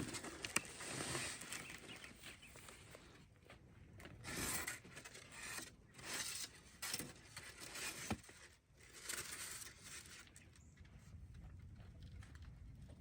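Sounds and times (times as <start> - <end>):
cardboard scraping and tearing: 0.0 - 1.8, 4.2 - 10.2.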